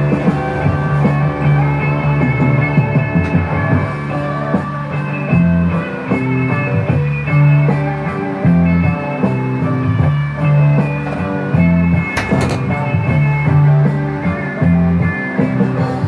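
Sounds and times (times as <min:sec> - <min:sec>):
guitar-led rock music: 0:00.0 - 0:16.0.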